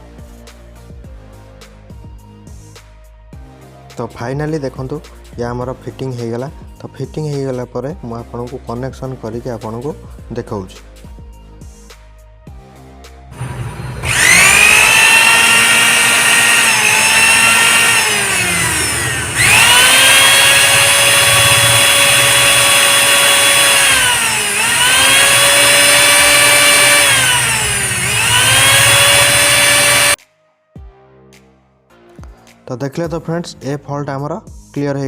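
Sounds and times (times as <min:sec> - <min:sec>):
mixer grinder motor whining: 0:13.3 - 0:30.2.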